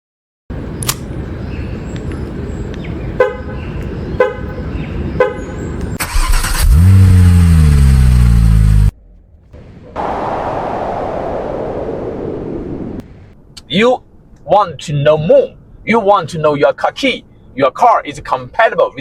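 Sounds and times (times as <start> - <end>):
car horn chirps: 3.2 - 6.0
car engine cranking and starting: 5.8 - 10.0.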